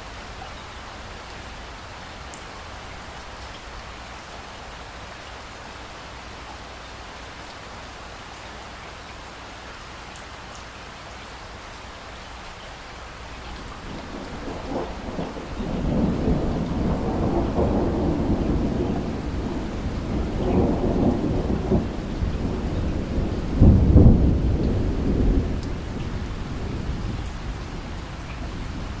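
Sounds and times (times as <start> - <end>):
steady rain: 0.0 - 29.0
rolling thunder: 13.6 - 29.0.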